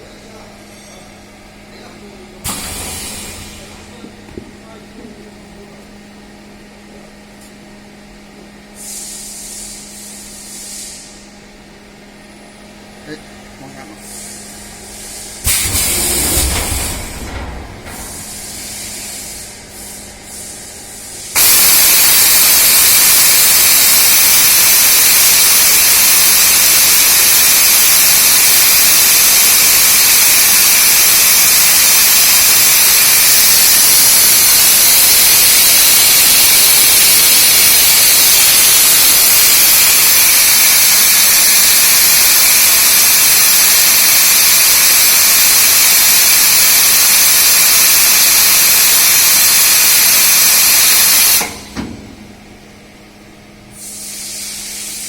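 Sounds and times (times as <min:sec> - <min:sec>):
loud steady hiss: 0:14.0 - 0:51.8, 0:53.8 - 0:55.0.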